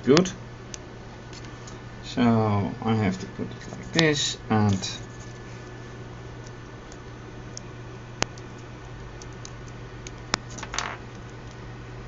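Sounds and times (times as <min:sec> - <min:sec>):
low electrical hum: 0:00.0 - 0:12.0
scraping rustle: 0:04.8 - 0:05.8.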